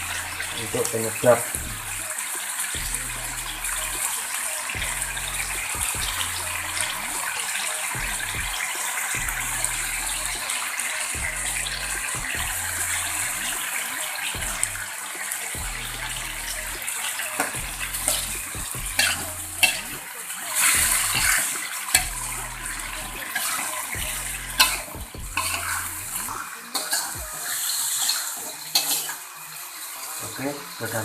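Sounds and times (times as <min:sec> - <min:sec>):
low hum: 0:04.8 - 0:07.3, 0:09.2 - 0:10.4, 0:11.2 - 0:13.6
meat sizzling in a pan: 0:24.6 - 0:31.0.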